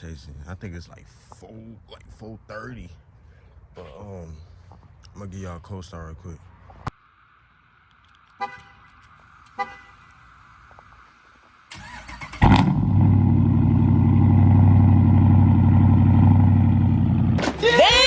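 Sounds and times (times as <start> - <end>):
car horn chirps: 8.4 - 10.1.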